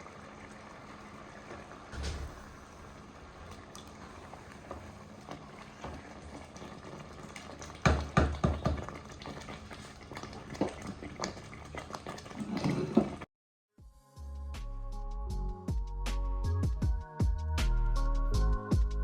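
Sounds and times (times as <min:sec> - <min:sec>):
low hum: 0:01.9 - 0:04.3.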